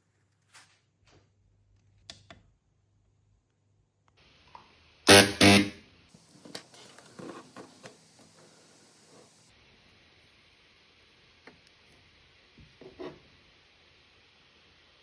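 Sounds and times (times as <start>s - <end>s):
spot welder buzzing: 5.1s - 5.8s.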